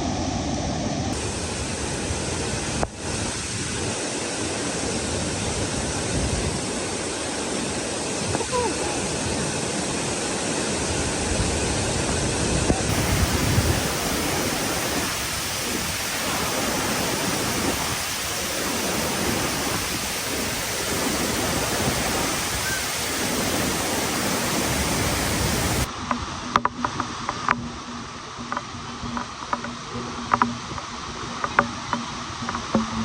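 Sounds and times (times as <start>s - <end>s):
waterfall rushing: 12.9s - 25.9s.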